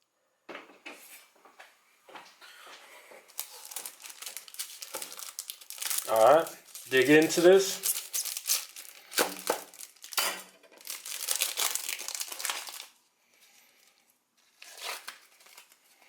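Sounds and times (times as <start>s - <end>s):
soap wrappers tearing and crumpling: 3.3s - 13.0s, 13.8s - 16.0s.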